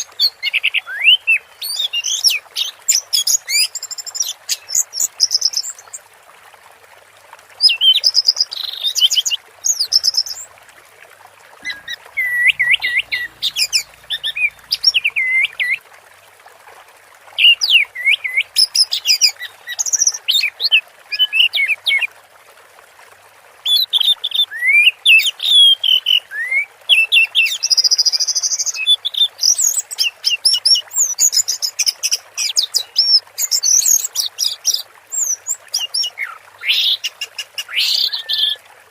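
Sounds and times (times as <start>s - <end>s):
thrush singing whistled phrases: 11.6s - 15.8s.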